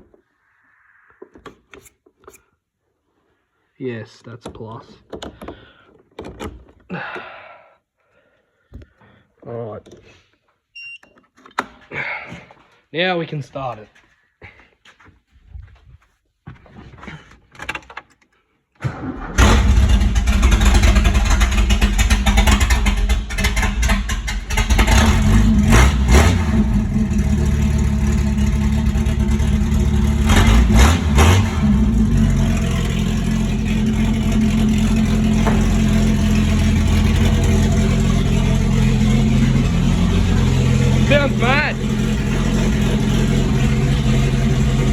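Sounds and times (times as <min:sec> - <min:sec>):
car engine cranking and revving: 0:18.8 - 0:44.9
car engine idling: 0:19.4 - 0:44.9.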